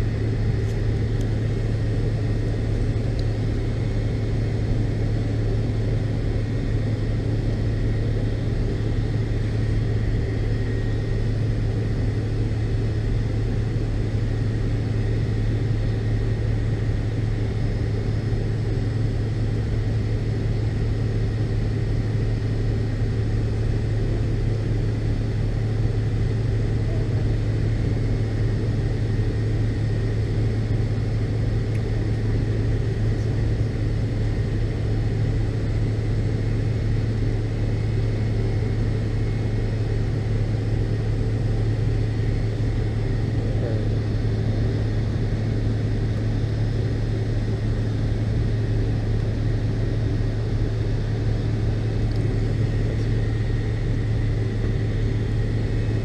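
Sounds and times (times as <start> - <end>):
airliner cabin drone: 0.0 - 56.0.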